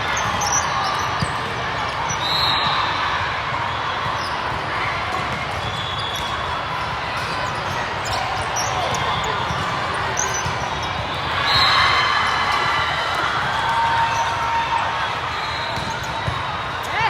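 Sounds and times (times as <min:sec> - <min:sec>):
sneakers squeaking on court: 0:00.0 - 0:03.0, 0:04.0 - 0:12.8, 0:15.4 - 0:17.0
balls being hit and bounced: 0:00.0 - 0:17.0
many voices: 0:00.0 - 0:17.0.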